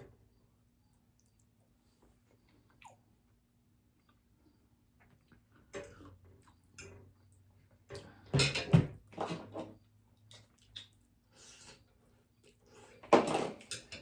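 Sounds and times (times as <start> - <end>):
tableware knocks and clinks: 8.3 - 9.7, 13.1 - 14.0.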